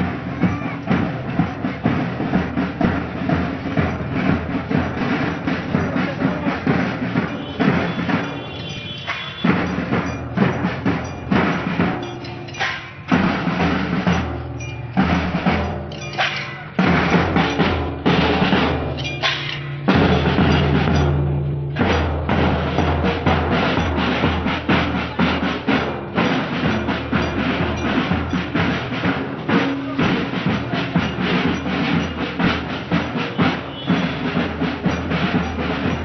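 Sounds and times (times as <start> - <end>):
bass and snare drums: 0.0 - 36.0
held instrument notes: 0.0 - 36.0.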